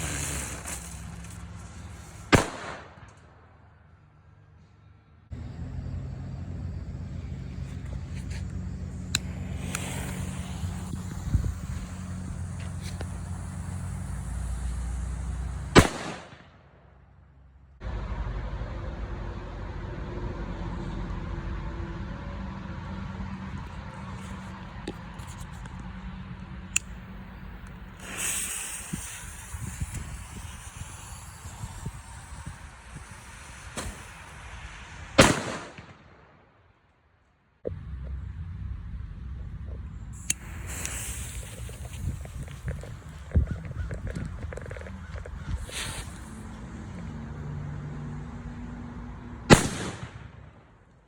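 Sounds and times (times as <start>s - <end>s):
firecracker fuse hissing: 0.0s - 3.0s, 5.4s - 16.4s, 23.5s - 35.8s, 40.0s - 47.4s
low mechanical hum: 4.5s - 15.8s.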